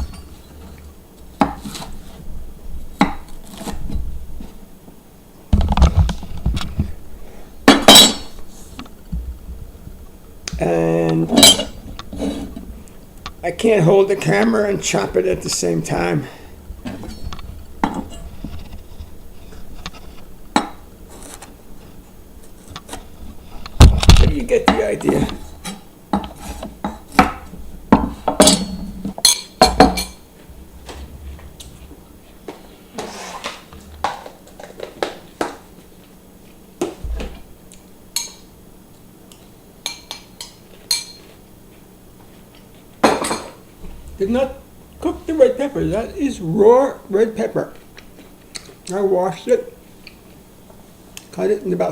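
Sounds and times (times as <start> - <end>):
knife and dishes clinking: 7.7 - 8.4, 11.3 - 12.5, 28.3 - 30.2, 39.8 - 41.4
spoon clinking on dishes: 39.8 - 41.3.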